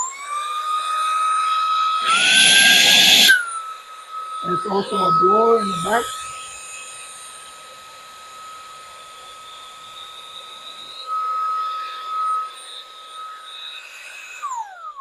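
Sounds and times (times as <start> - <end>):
small vacuum motor whining: 0.0 - 15.0
rush of air: 2.0 - 3.4.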